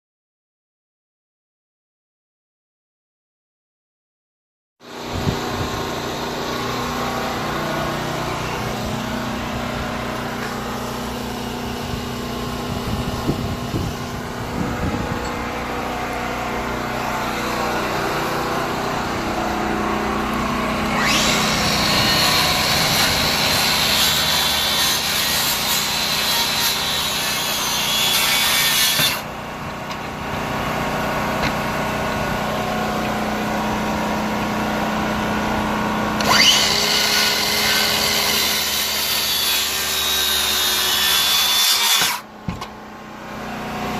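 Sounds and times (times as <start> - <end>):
power saw cutting wood: 4.8 - 42.3.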